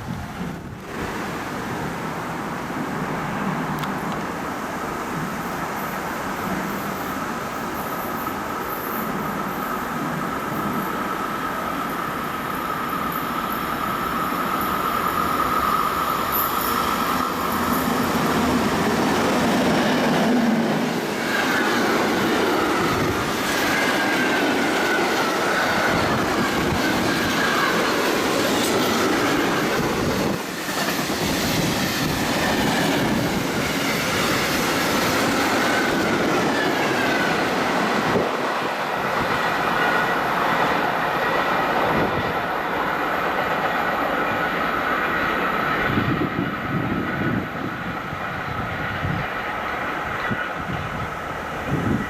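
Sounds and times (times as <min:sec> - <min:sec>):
train rolling and clattering: 0:05.0 - 0:52.0
high wavering wheel squeal: 0:10.6 - 0:18.5.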